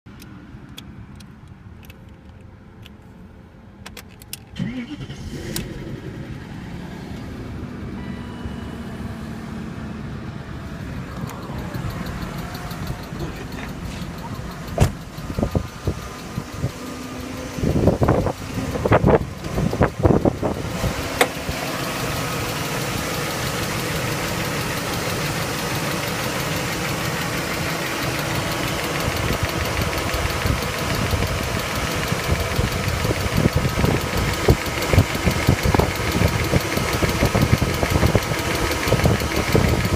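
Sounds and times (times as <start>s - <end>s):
car engine idling: 4.4s - 39.9s
valve lifters ticking: 11.0s - 39.9s
loud engine knocks: 14.6s - 16.0s.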